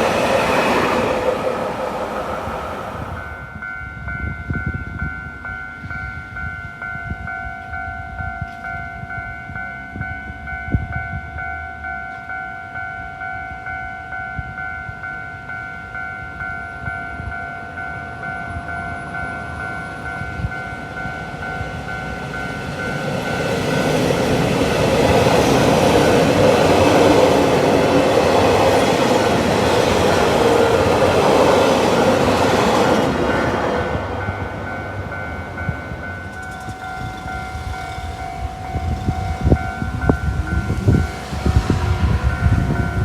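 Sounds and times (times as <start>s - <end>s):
level crossing warning bells: 0.0s - 43.0s
train wheels rolling clickety-clack: 20.0s - 43.0s.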